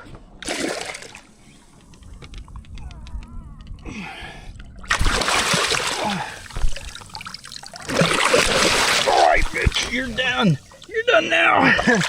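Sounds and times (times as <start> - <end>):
fish splashing at surface: 4.9 - 10.0.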